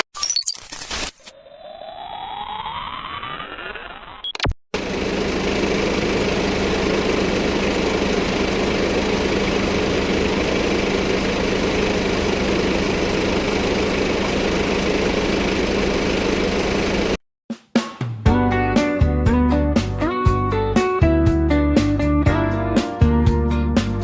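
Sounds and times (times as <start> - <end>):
diesel engine idling: 4.8 - 17.2.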